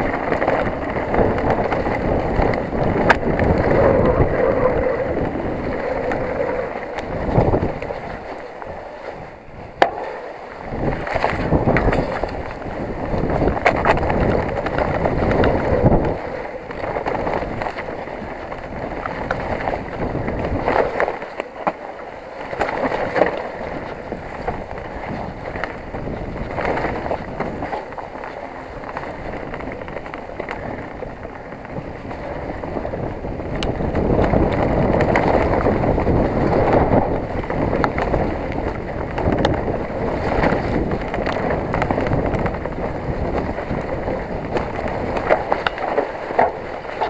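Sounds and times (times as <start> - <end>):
bike tyres rumbling on dirt: 0.0 - 47.0
wind buffeting microphone: 0.0 - 47.0
bike knocks and rattles: 9.8 - 21.8, 22.5 - 47.0.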